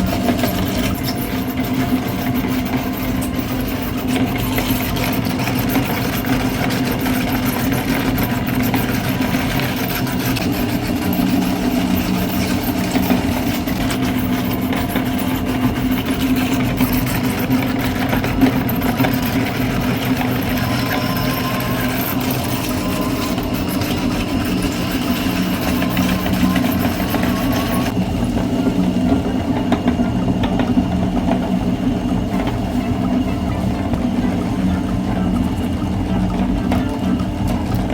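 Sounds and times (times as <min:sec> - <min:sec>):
grinding noise: 0:00.0 - 0:28.0
meat grinder motor humming: 0:00.0 - 0:37.9.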